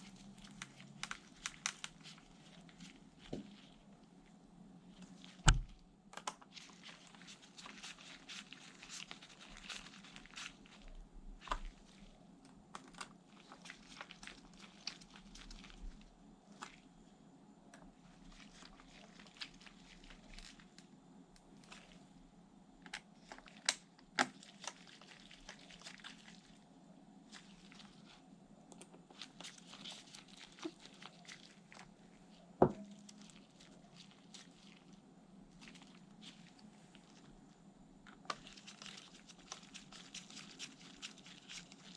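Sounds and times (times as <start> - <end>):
packaging crinkling and rustling: 0.0 - 4.0, 4.9 - 16.9, 22.9 - 26.6, 29.1 - 37.5, 38.1 - 41.9.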